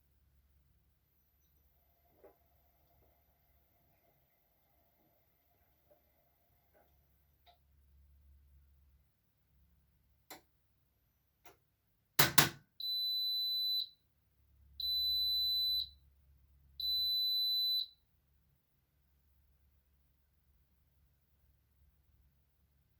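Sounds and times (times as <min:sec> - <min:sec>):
washing machine clicks: 0:12.2 - 0:12.6.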